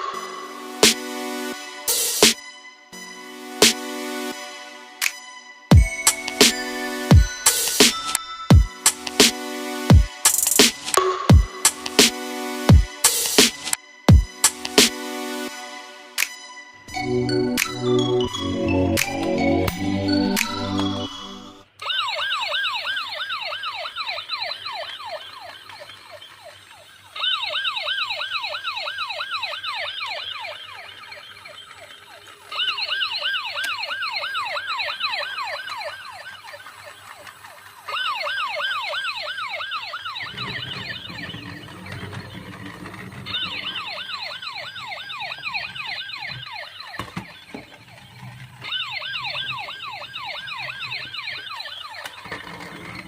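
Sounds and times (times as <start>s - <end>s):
toy siren warbling: 18.3s - 53.0s.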